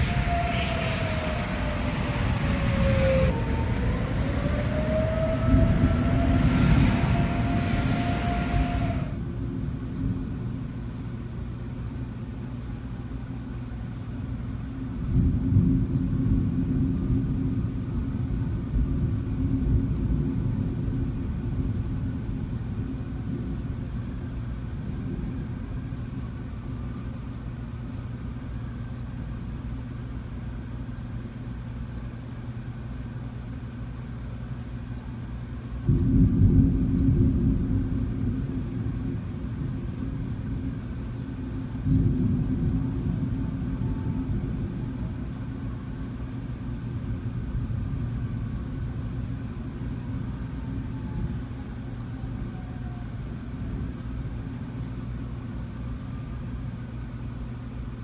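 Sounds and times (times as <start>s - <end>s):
low rumble: 0.0s - 9.2s
tornado warning siren wailing: 0.0s - 9.2s, 24.4s - 30.0s, 32.5s - 36.1s, 37.3s - 57.9s.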